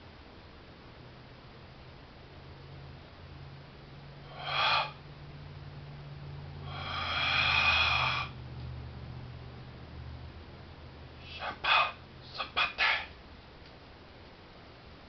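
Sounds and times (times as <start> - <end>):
steady low hum: 0.0 - 15.0
animal calls: 4.2 - 5.0, 6.6 - 8.4, 11.2 - 13.2.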